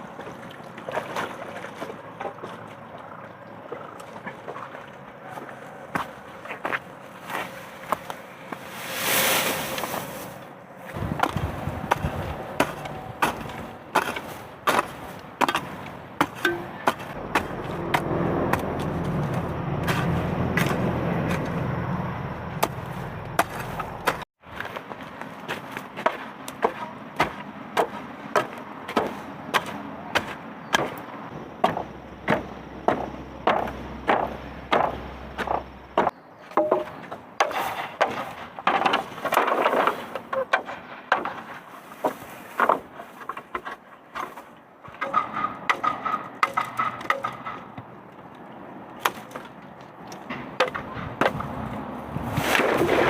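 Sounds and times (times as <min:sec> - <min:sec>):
rustling: 0:07.2 - 0:11.0
low rushing sound: 0:08.6 - 0:13.1
tool chopping wood: 0:11.1 - 0:21.5, 0:22.6 - 0:24.2, 0:26.0 - 0:31.0, 0:31.6 - 0:41.4, 0:49.0 - 0:49.5, 0:50.3 - 0:51.5.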